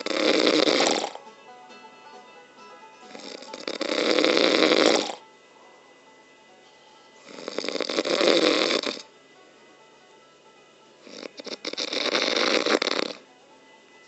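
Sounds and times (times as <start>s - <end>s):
loud rattling snoring: 0.0s - 1.2s, 3.1s - 5.2s, 7.2s - 9.0s, 11.0s - 13.2s.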